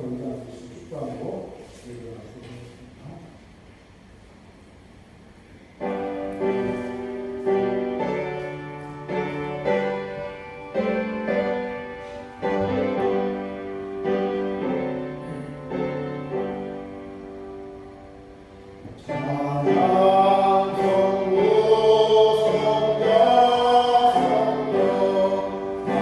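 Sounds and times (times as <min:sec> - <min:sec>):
piano playing slow hymn chords: 0:05.7 - 0:26.0.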